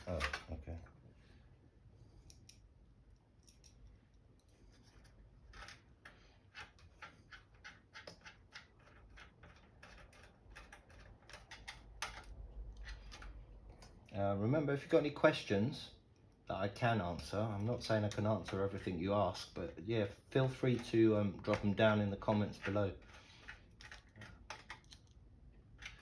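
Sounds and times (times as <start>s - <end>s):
small metal clicks and ticks: 3.4s - 4.6s.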